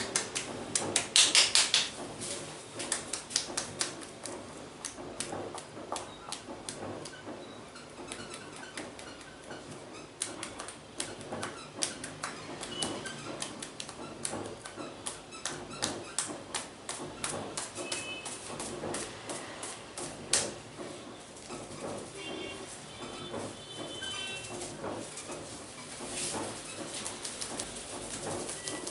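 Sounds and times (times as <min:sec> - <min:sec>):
hands slapping an oiled scalp: 0:00.0 - 0:02.0, 0:02.8 - 0:07.2, 0:10.2 - 0:20.6.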